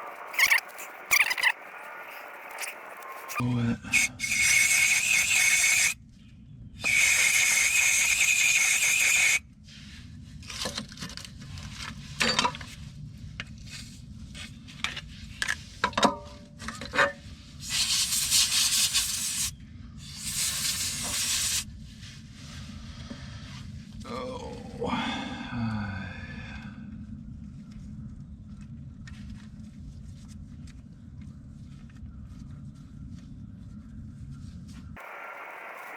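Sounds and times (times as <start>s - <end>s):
air hissing bursts: 4.0s - 6.0s, 6.8s - 9.4s, 17.6s - 21.6s.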